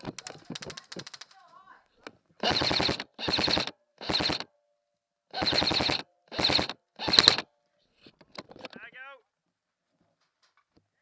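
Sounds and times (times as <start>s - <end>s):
airsoft gun full-auto bursts: 2.4s - 4.5s, 5.3s - 7.5s.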